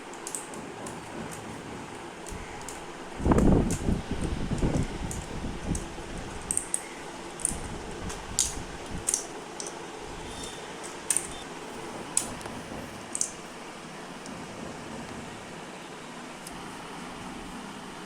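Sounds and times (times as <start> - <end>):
mechanical keyboard clicks: 0.0 - 1.5, 4.5 - 9.8, 10.4 - 11.4, 13.1 - 13.4
steady background noise: 0.0 - 18.0.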